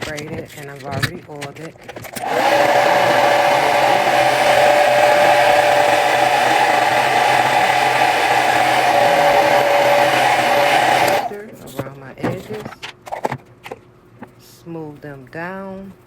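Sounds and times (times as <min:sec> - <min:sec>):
hair dryer whining: 0:02.2 - 0:11.4.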